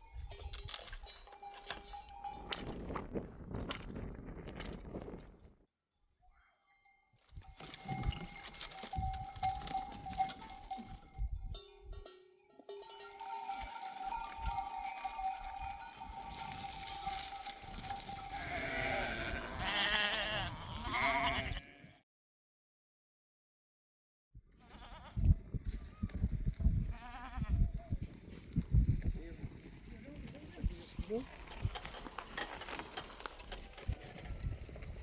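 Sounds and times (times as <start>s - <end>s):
sheep bells clanking: 0.0s - 3.2s, 6.4s - 20.4s
sheep bleating: 16.7s - 22.0s, 24.6s - 25.2s, 26.9s - 27.6s.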